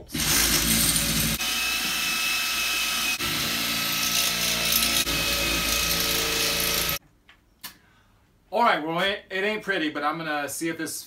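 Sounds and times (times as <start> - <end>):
power drill cutting metal: 0.1 - 7.0.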